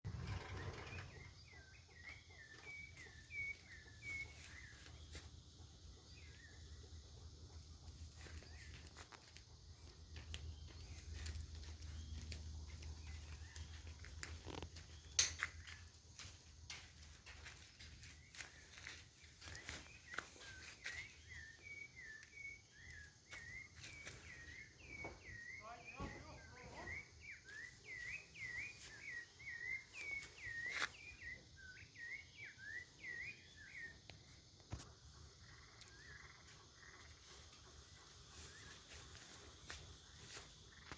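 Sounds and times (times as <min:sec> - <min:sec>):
birds chirping faintly: 0:00.1 - 0:40.9
songbird whistling: 0:00.6 - 0:05.1, 0:18.3 - 0:34.1.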